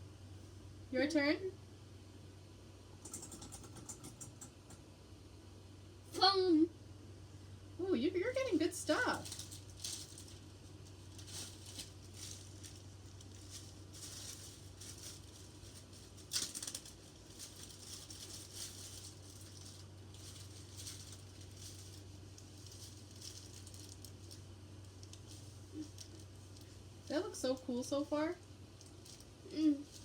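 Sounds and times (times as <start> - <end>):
steady low hum: 0.0 - 30.0
containers rattling and rustling: 9.2 - 24.4.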